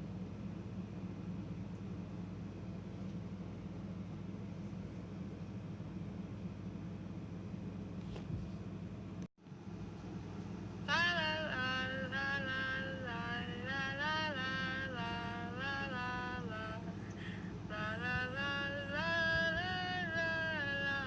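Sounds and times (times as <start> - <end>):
steady low hum: 0.0 - 21.0
woman singing wordless melody: 10.8 - 21.0.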